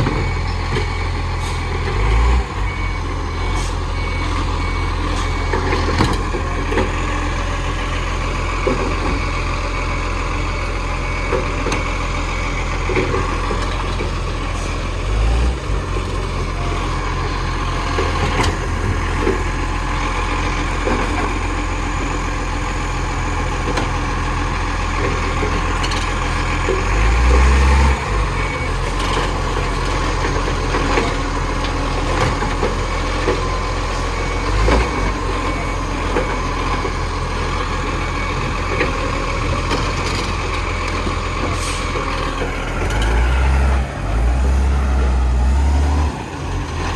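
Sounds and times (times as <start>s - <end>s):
faint reversing beeper: 0.0s - 7.5s
diesel engine idling and revving: 0.0s - 46.9s.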